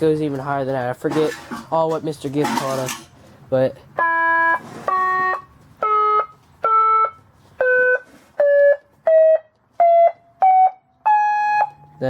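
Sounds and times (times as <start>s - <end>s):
electronic horn beeps rising: 4.0s - 11.8s.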